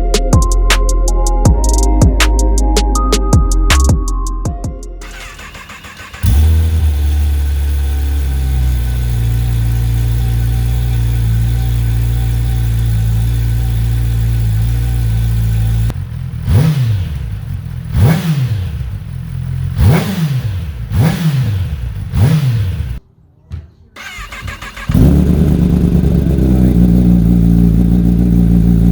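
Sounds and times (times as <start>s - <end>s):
motorcycle engine revving: 5.0s - 23.0s, 24.0s - 28.9s.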